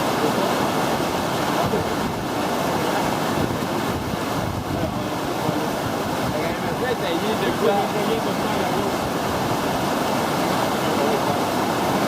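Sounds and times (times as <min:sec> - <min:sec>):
whitewater rushing: 0:00.0 - 0:12.0.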